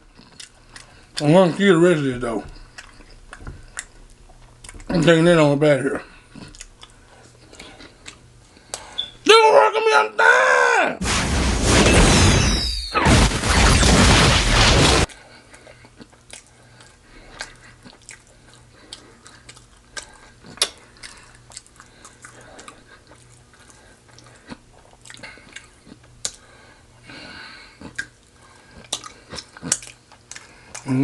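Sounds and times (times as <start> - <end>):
chewing fried chicken: 0.0 - 5.2, 6.0 - 8.9, 15.2 - 31.0
loud harsh noise burst: 11.0 - 15.1.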